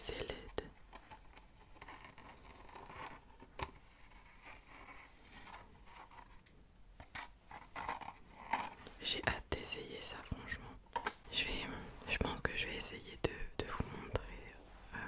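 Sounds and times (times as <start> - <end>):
rustling and handling noises: 0.4 - 9.2.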